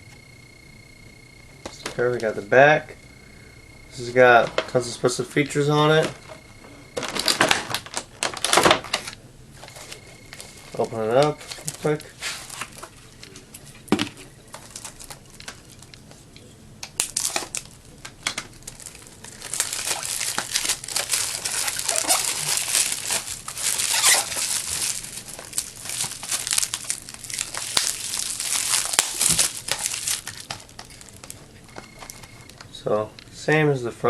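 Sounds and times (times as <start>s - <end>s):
plastic wrapping crinkling: 5.9s - 32.8s
clicks and rustles: 7.0s - 33.3s.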